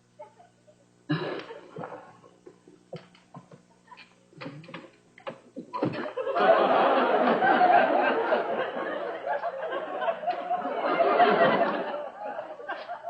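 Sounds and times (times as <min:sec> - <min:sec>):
studio audience laughing: 0:05.8 - 0:13.0.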